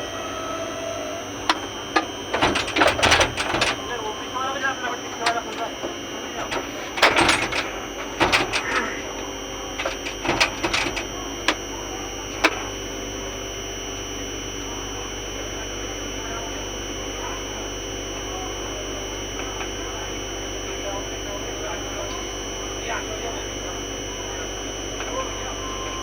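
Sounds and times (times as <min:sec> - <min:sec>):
electrical contactor humming: 0:00.0 - 0:26.0
sharp clicks and knocks: 0:01.5 - 0:04.0, 0:05.2 - 0:11.6, 0:12.3 - 0:12.7.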